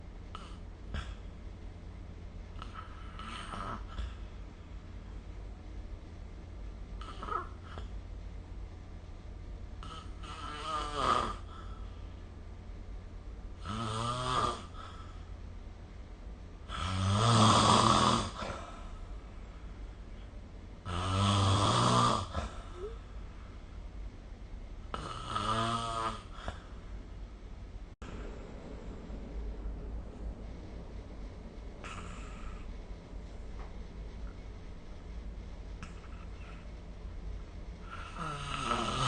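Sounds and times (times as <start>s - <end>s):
steady low hum: 0.0s - 39.0s
person snoring: 2.6s - 4.2s, 9.8s - 11.9s, 13.6s - 15.2s, 16.7s - 18.9s, 20.8s - 23.0s, 24.9s - 26.6s, 31.8s - 32.7s, 37.8s - 39.0s.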